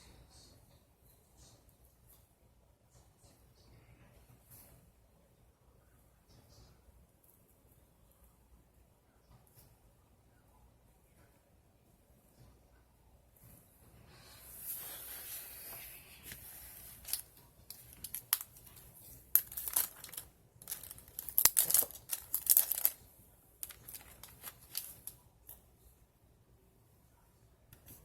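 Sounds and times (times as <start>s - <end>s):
paper crackles and clicks: 16.2s - 23.0s, 23.6s - 25.2s.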